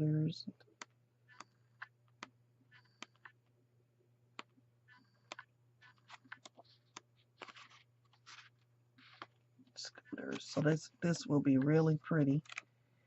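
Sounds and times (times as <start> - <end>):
paper rustles: 6.0 - 9.4.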